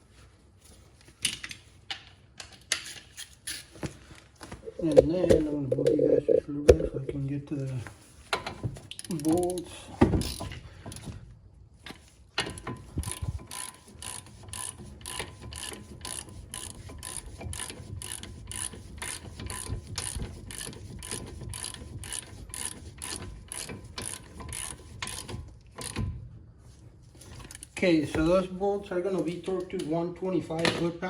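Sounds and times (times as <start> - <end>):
hand ratchet clicking: 12.4 - 26.0.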